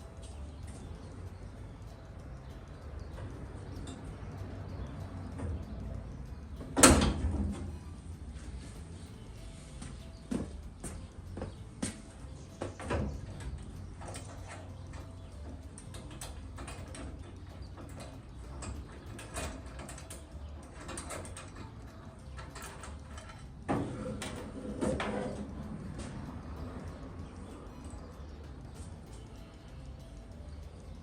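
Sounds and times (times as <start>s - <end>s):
hand tools clicking on metal: 0.0s - 31.0s
metal clanks: 6.6s - 7.8s, 10.3s - 26.2s.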